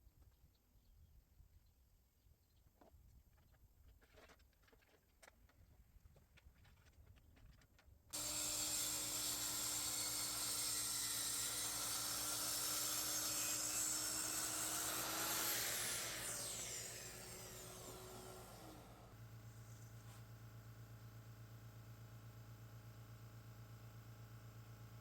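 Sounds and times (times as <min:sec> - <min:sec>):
circular saw running: 0:08.2 - 0:25.0.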